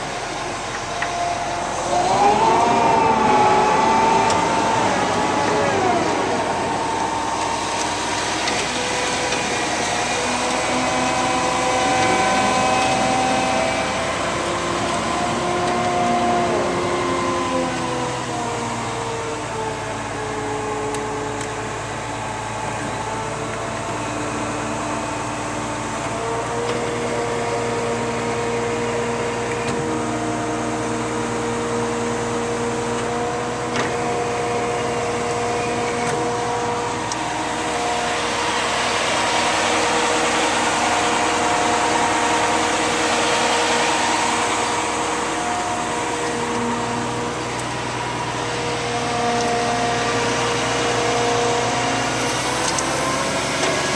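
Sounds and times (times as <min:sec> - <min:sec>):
whining tones: 0:00.0 - 0:24.6, 0:31.2 - 0:53.8
diesel engine running: 0:00.0 - 0:53.9
loud rushing noise: 0:01.2 - 0:15.2.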